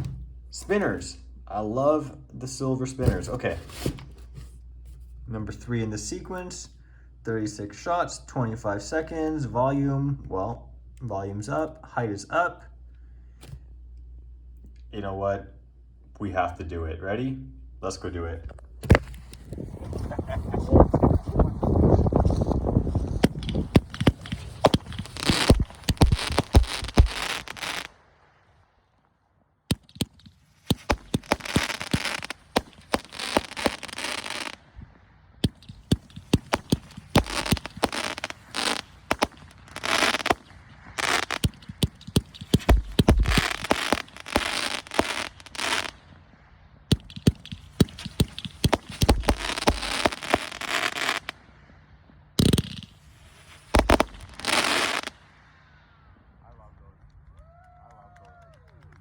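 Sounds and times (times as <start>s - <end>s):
firework shots and bursts: 18.8s - 28.9s, 29.7s - 56.5s
dense firework crackling: 18.8s - 59.0s.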